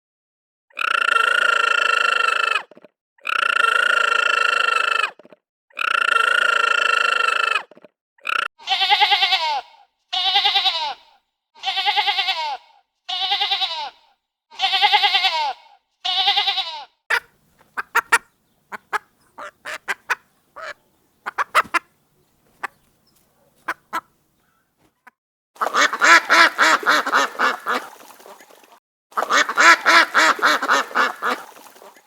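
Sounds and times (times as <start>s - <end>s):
goat bleating: 8.6s - 16.9s
short sharp clicking calls: 17.1s - 25.2s.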